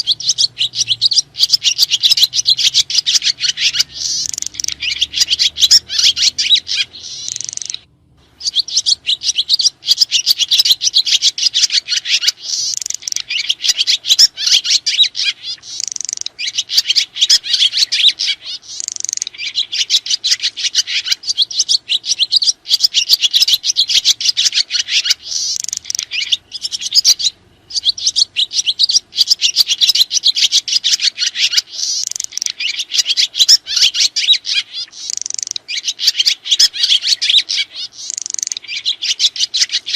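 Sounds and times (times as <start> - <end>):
swiftlets twittering: 0.0 - 30.1.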